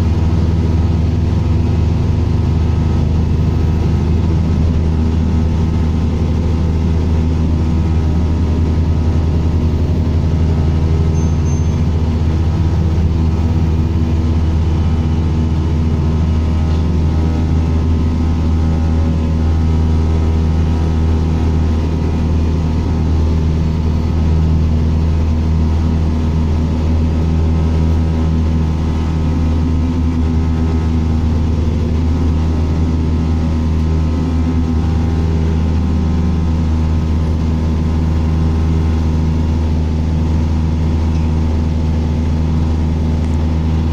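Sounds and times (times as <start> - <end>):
bus engine drone: 0.0 - 43.9.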